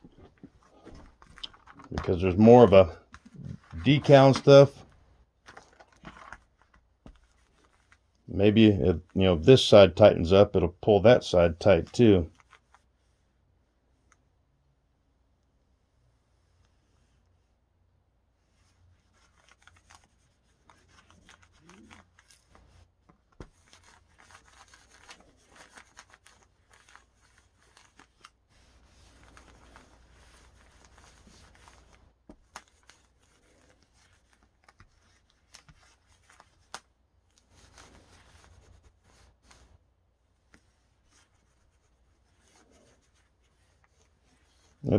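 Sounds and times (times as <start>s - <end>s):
iron rubbing over plastic film: 18.5s - 36.8s.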